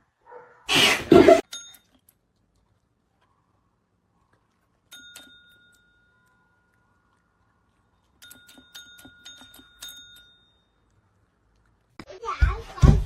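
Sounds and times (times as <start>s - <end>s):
small metal bell ringing: 1.4s - 2.2s, 4.9s - 6.7s, 8.2s - 10.9s.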